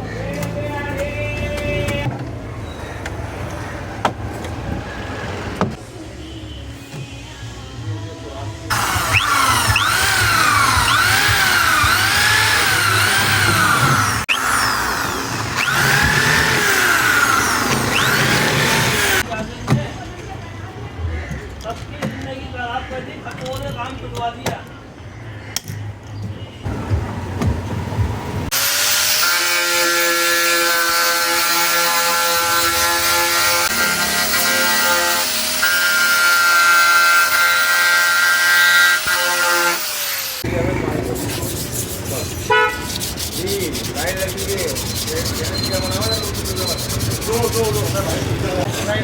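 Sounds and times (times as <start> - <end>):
power tool motor whine: 8.7 - 19.2
power tool whining on metal: 8.7 - 19.2, 28.5 - 40.4.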